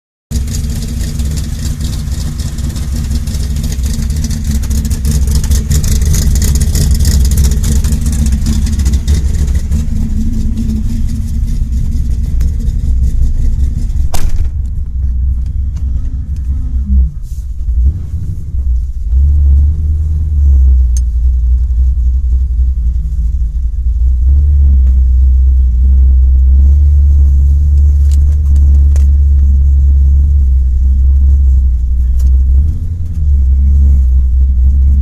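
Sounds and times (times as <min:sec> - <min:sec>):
engine rough lumpy idle: 0:00.3 - 0:35.0
click: 0:20.9 - 0:21.1.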